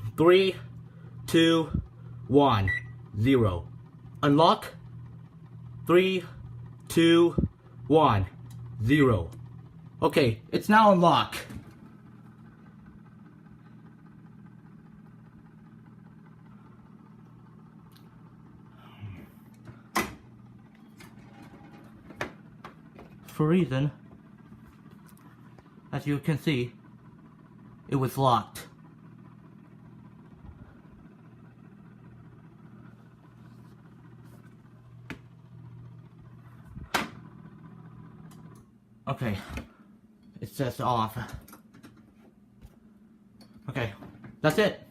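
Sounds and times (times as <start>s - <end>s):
low electrical hum: 0.0s - 44.9s
oven click: 19.6s - 20.4s.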